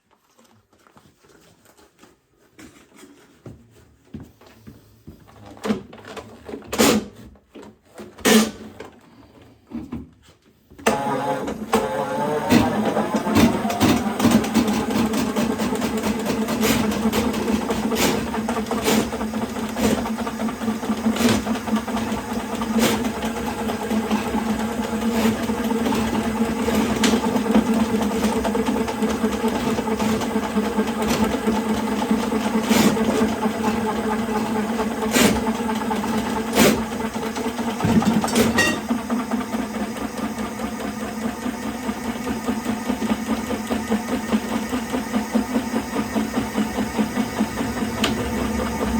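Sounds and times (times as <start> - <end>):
drain snake machine running: 46.0 - 48.9.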